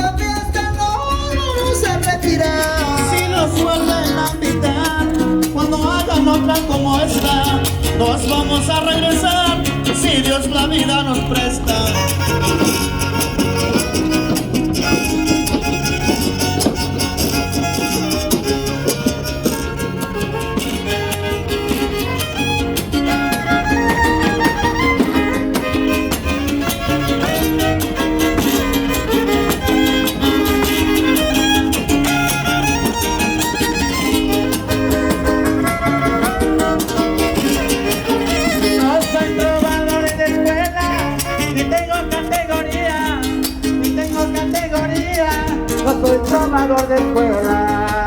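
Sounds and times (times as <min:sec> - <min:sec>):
guitars strumming: 0:00.0 - 0:48.0
violin melody with slides: 0:11.7 - 0:40.2.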